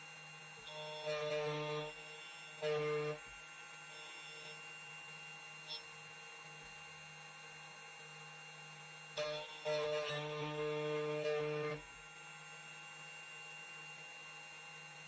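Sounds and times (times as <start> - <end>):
key cutting machine whining: 0.4 - 7.0, 8.4 - 12.0.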